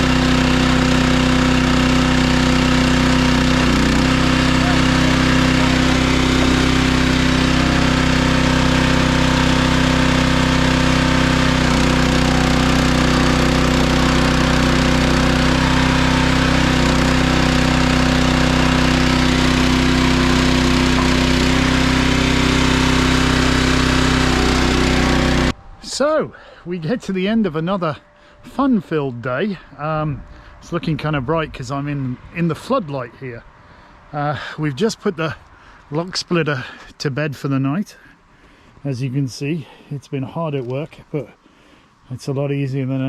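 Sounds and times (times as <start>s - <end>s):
small gasoline engine running: 0.0s - 25.6s.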